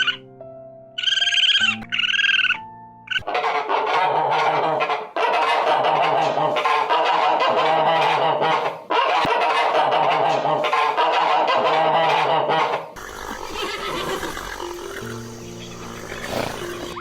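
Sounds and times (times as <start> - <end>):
flock of birds calling: 13.0 - 17.0.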